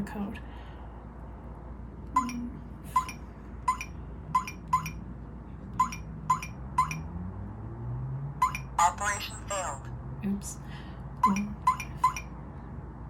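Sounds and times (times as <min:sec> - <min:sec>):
keypad beeping: 0:02.2 - 0:05.0, 0:05.8 - 0:07.1, 0:08.4 - 0:09.0, 0:11.2 - 0:12.3.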